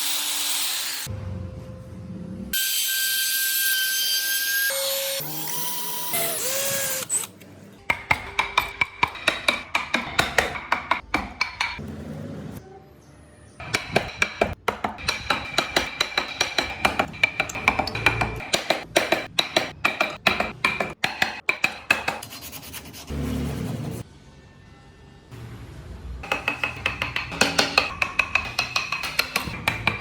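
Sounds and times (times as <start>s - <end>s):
sharp tapping strikes on wood: 7.9s - 11.8s, 13.6s - 22.2s, 26.2s - 30.0s.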